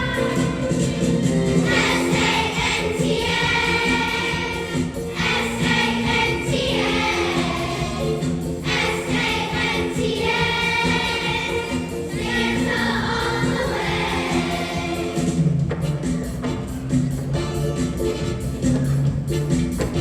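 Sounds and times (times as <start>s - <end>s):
choir singing: 0.0s - 0.9s, 1.5s - 15.6s.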